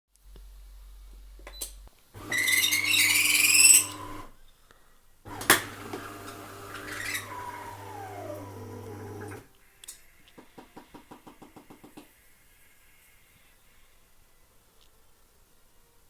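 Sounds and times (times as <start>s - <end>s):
coffee machine motor hum: 2.2s - 4.3s, 5.3s - 9.5s
high squeak: 2.2s - 4.3s.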